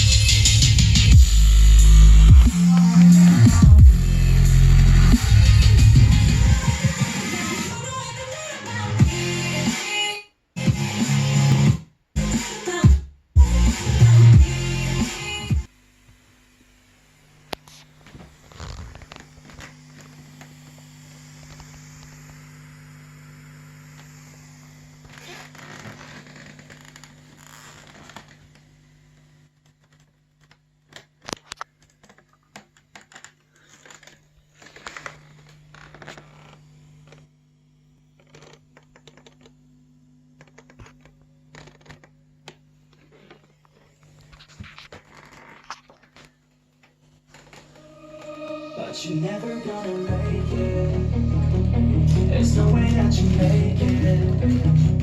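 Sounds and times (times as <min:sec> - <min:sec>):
low hum: 0:47.3 - 0:55.0.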